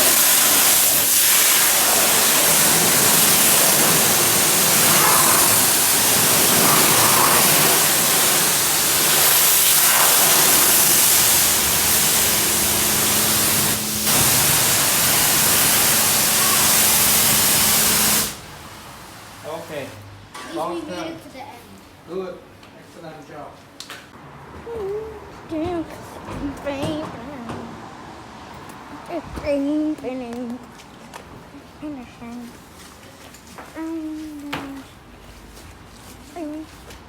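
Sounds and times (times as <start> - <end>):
pressure washer spraying water: 0.0 - 19.9.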